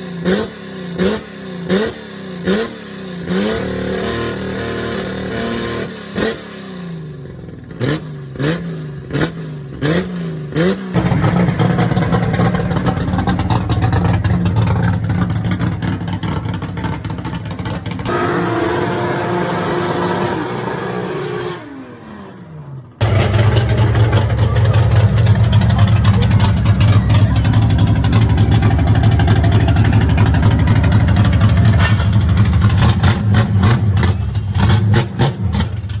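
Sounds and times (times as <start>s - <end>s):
car engine exhaust revving: 7.7s - 21.7s, 23.0s - 36.0s
deep exhaust idling with cracks: 11.0s - 18.1s, 23.0s - 36.0s.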